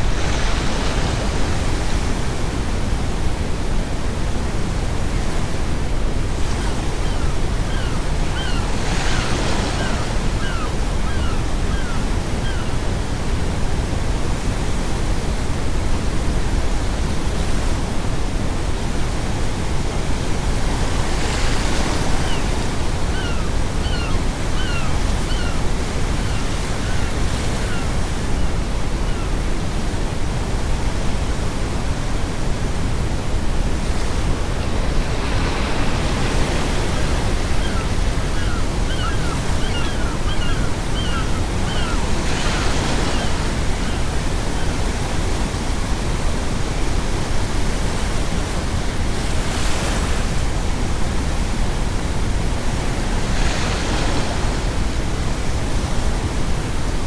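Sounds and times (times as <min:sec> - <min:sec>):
seagulls calling: 0:06.5 - 0:12.9, 0:21.6 - 0:29.4, 0:34.1 - 0:45.2
ocean waves breaking: 0:07.4 - 0:11.7, 0:20.0 - 0:57.0.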